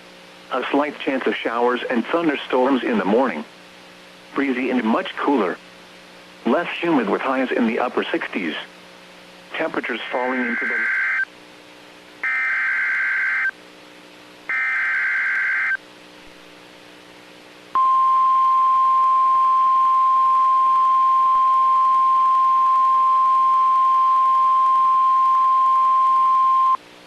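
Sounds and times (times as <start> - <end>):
steady warning alarm tone: 10.3 - 11.2, 12.2 - 13.5, 14.5 - 15.8
warbling data tones: 10.3 - 11.2, 14.5 - 15.8.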